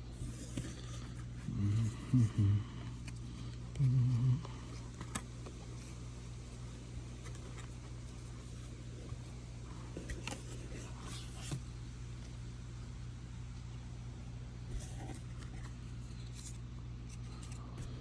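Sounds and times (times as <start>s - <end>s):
steady low hum: 0.0s - 18.0s
paper rustling: 0.1s - 2.2s.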